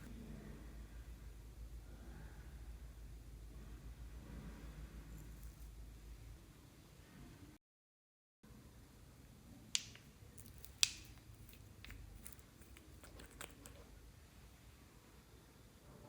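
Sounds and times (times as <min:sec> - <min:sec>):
slime sticky clicks and pops: 0:09.8 - 0:12.0.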